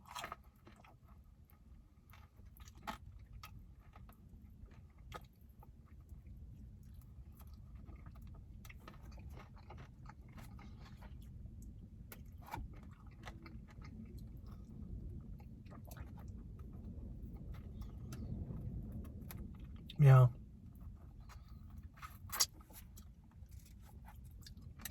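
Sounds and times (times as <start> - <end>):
crunchy chewing and biting: 0.0 - 16.7, 21.2 - 24.9
steady low rumble: 13.5 - 24.9.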